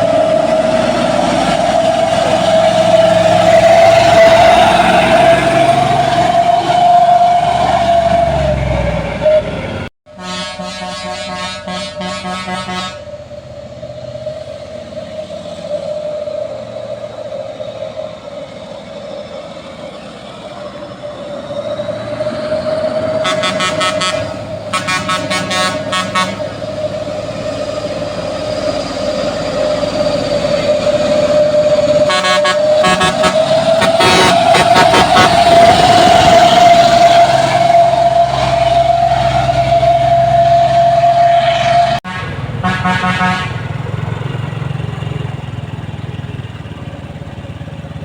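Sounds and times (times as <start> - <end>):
heavy machinery whining: 0.0 - 9.9, 11.6 - 47.4
horn sounding: 9.2 - 13.1, 23.1 - 26.7, 31.6 - 43.9.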